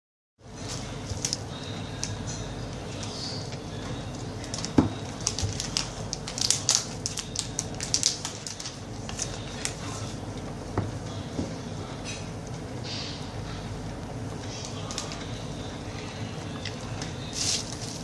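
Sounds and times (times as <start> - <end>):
packaging rustling and crinkling: 4.4 - 10.2, 17.3 - 18.0.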